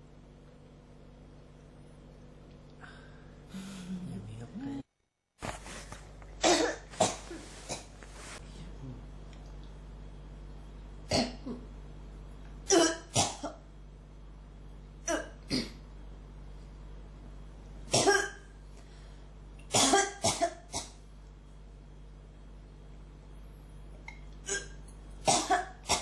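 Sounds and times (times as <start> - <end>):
person coughing: 6.4 - 7.9, 11.1 - 11.7, 12.7 - 13.6, 15.0 - 15.8, 17.9 - 18.5, 19.7 - 21.0, 24.4 - 26.0.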